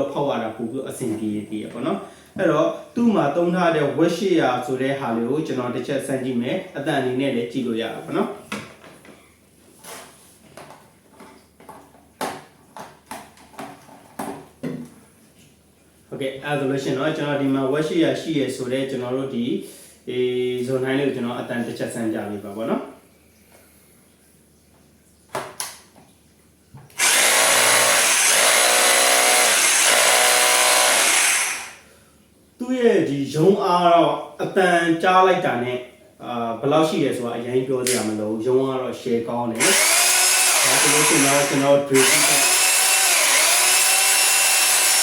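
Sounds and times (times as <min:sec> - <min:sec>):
rotary hammer running: 0:27.0 - 0:31.8, 0:39.6 - 0:45.0.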